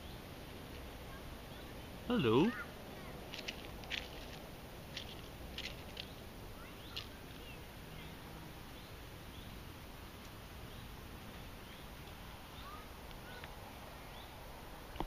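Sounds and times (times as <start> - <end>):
low outdoor background hum: 0.0 - 15.0
bird chirps: 5.9 - 9.6.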